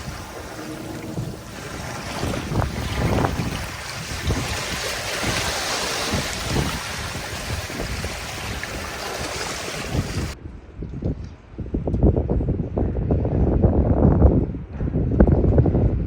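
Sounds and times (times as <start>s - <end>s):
water washing and surging: 0.0s - 10.4s
wind buffeting microphone: 0.0s - 16.0s.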